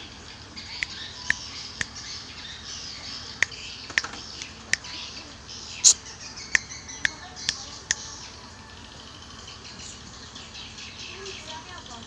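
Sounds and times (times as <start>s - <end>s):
sharp bird chirps: 0.0s - 8.4s
birds twittering: 0.0s - 12.0s.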